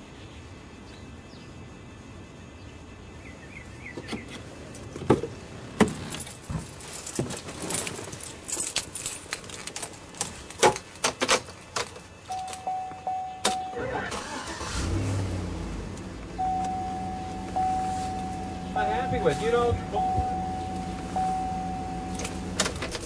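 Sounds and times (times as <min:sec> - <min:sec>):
keys jangling: 0:06.0 - 0:13.7, 0:22.1 - 0:23.0.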